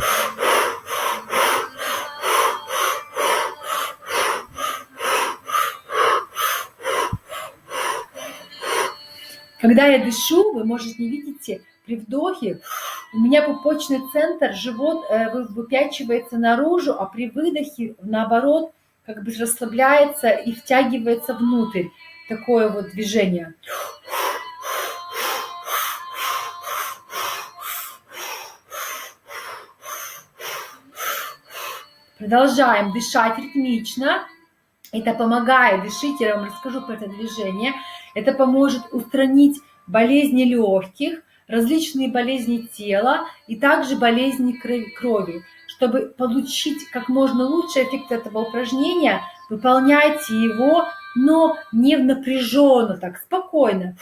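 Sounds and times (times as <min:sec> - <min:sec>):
fast rhythmic mouth breathing: 0:00.0 - 0:09.6, 0:12.6 - 0:13.1, 0:23.6 - 0:33.4.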